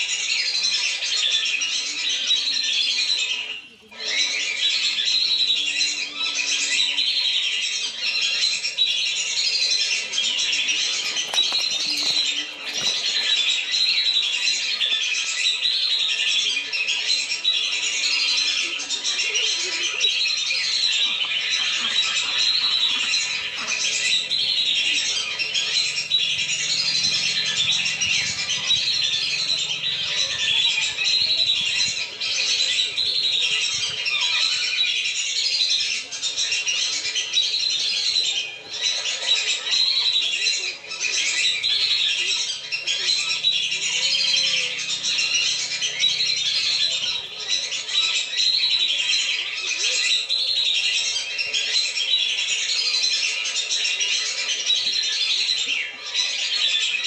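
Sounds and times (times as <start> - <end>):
ducks whistling calls: 4.0 - 15.8, 19.2 - 52.4.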